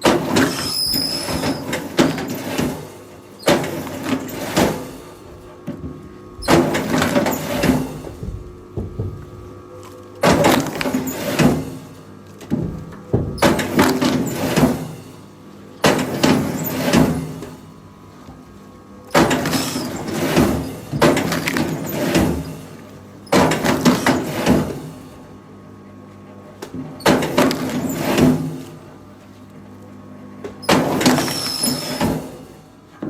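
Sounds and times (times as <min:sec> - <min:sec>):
loud knocking and scraping: 0:00.0 - 0:09.6, 0:10.2 - 0:15.0, 0:15.8 - 0:17.5, 0:19.1 - 0:22.5, 0:23.3 - 0:24.8.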